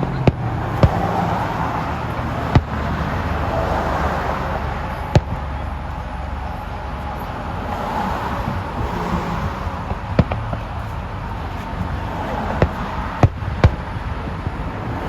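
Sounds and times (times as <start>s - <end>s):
steady background noise: 0.0s - 15.0s
fireworks bangs: 5.1s - 5.5s.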